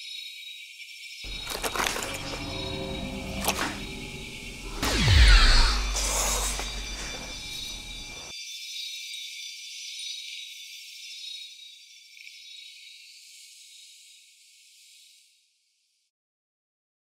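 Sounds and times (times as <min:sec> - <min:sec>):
shimmering hiss with ringing tones: 0:01.3 - 0:08.3.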